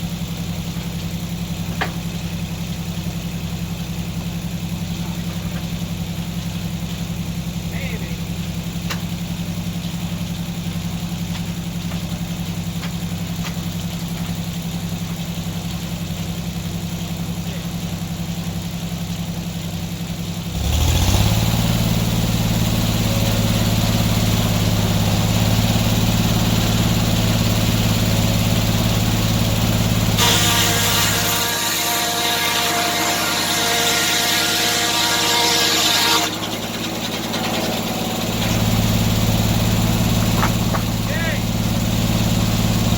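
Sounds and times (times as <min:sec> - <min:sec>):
sawmill engine running: 0:00.0 - 0:42.9
saw cutting through log: 0:20.6 - 0:42.9.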